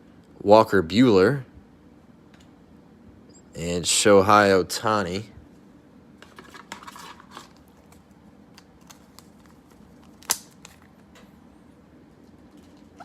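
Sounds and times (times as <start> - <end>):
cards and packaging rustling: 6.2 - 11.2.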